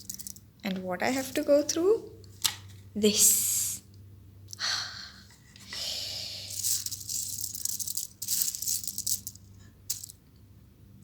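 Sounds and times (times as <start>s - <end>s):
plastic letters rattling: 0.0s - 0.4s, 6.5s - 10.2s.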